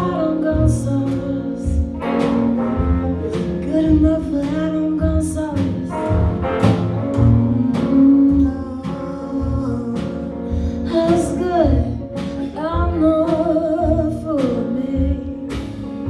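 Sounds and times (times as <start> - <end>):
person singing: 0.0 - 1.9, 3.2 - 6.0, 7.3 - 16.0
steady beat: 0.0 - 14.2
guitar accompaniment: 0.0 - 16.0
pulsing low bass notes: 0.0 - 16.0.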